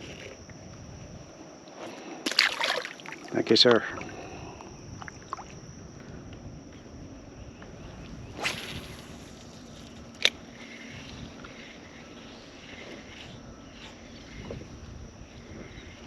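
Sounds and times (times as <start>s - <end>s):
wind: 0.0s - 16.0s
water lapping: 1.7s - 5.6s, 10.3s - 16.0s.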